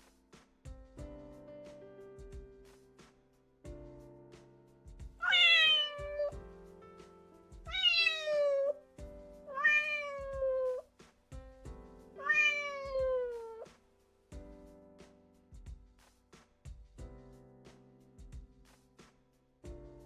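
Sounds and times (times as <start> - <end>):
background music: 0.0 - 20.0
cat meowing: 5.2 - 6.4, 7.7 - 8.8, 9.5 - 10.8, 12.2 - 13.7.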